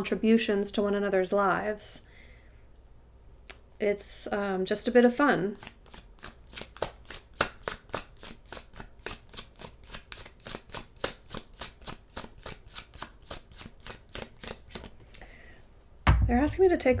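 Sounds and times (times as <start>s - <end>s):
cards being shuffled: 5.6s - 15.2s.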